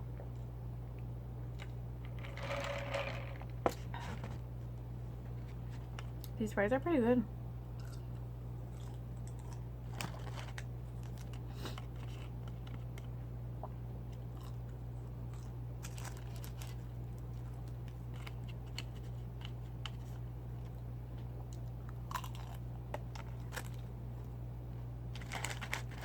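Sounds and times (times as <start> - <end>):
steady low hum: 0.0 - 26.0
person chewing crunchy food: 7.7 - 23.9.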